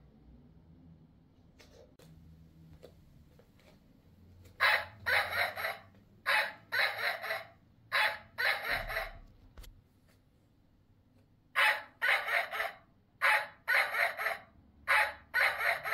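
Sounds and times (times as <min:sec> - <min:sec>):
recorded dog barking: 0:04.6 - 0:09.3, 0:11.5 - 0:15.9.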